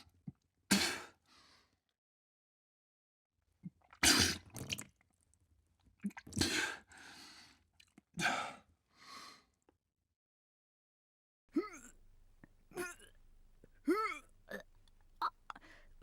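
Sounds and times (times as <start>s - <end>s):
person retching and vomiting: 11.6s - 16.0s.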